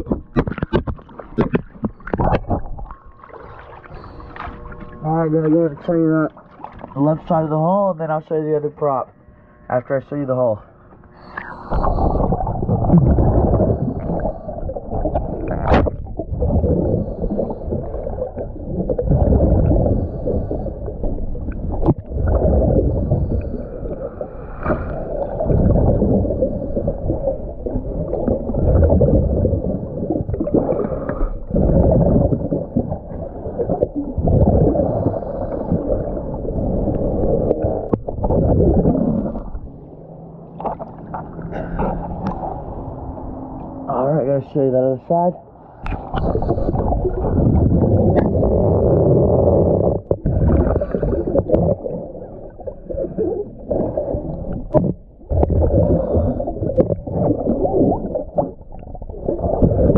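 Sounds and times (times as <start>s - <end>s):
gurgling exhaled bubbles: 0.0s - 7.4s, 11.2s - 43.3s, 45.8s - 59.9s
diver breathing through regulator: 3.4s - 5.0s, 10.8s - 39.8s, 41.4s - 42.9s, 45.6s - 57.7s.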